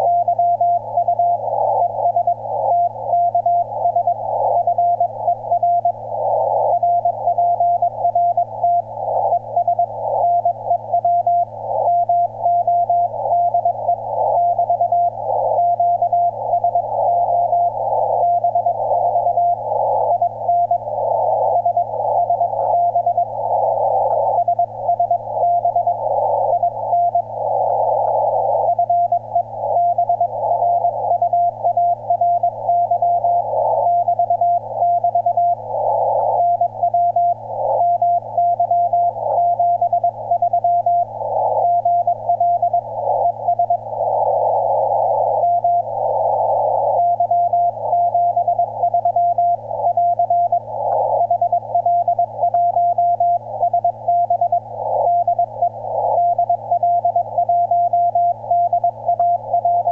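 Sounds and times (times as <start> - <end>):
radio receiver hiss: 15.2 - 59.9.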